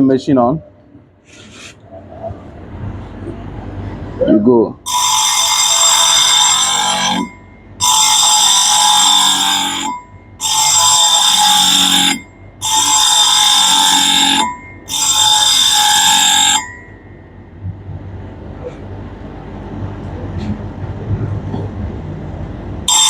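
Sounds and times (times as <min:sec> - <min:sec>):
low machine hum: 0:00.0 - 0:23.0
metal grinding screech: 0:04.9 - 0:17.0.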